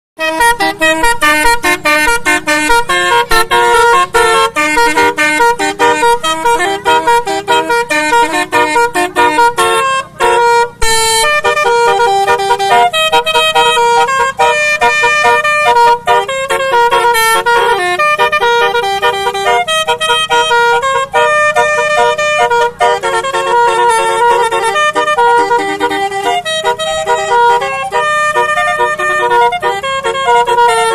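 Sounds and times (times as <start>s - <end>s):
musical horn playing a tune: 0.2s - 30.9s.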